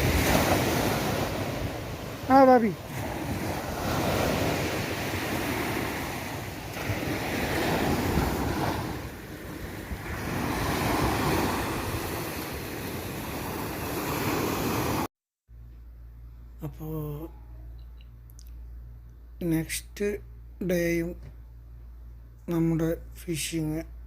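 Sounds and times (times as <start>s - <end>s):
sea waves washing in: 0.0s - 15.1s.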